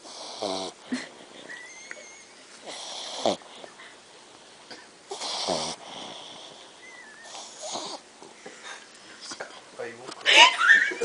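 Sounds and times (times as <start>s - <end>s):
dog snoring: 0.0s - 0.8s, 2.6s - 3.7s, 5.1s - 8.0s.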